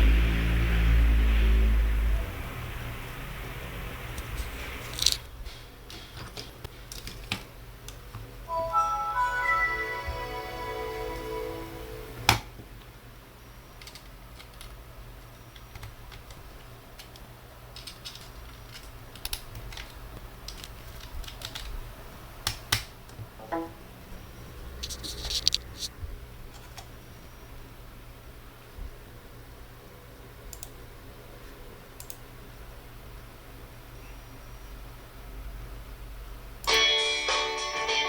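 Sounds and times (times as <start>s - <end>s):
laptop keys clicking: 13.8s - 14.8s, 15.5s - 21.8s.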